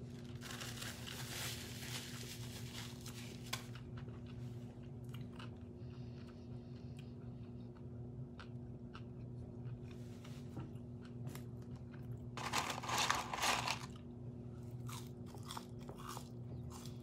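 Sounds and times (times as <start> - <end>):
low electrical hum: 0.0 - 17.0
person chewing crunchy food: 3.7 - 17.0.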